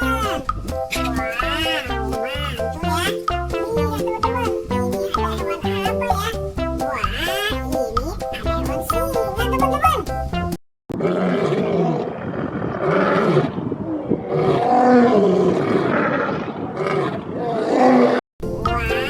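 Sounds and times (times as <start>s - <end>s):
lion roaring and growling: 10.9s - 18.2s.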